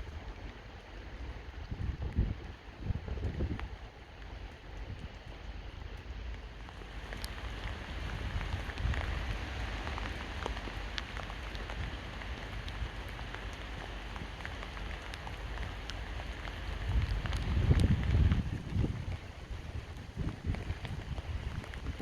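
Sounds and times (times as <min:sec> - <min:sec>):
steady rain falling: 0:00.0 - 0:22.0.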